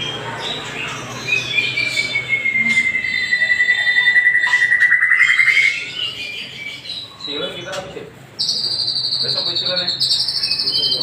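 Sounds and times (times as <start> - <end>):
songbird buzzy trill: 0.0 - 7.2, 8.4 - 11.0
soft whistled bird notes: 1.2 - 6.8.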